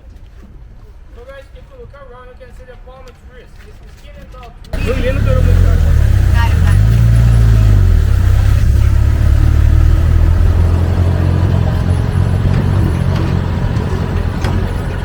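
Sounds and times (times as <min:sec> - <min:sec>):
light rattling: 0:04.8 - 0:15.0
vehicle engine rumbling: 0:04.8 - 0:15.0.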